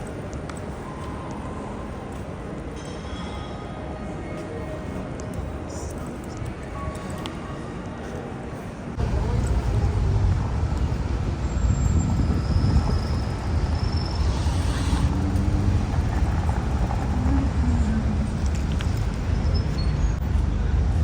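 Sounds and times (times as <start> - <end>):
road noise: 3.7 - 21.0
motor vehicle rumble: 8.9 - 21.0.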